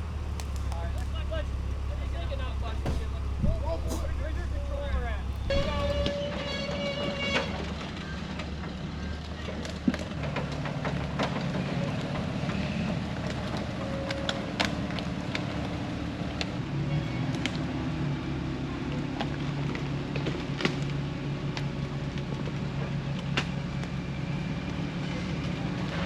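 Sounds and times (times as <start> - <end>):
off-road vehicle engine running: 0.0 - 6.1
sharp clicks and knocks: 0.0 - 6.1.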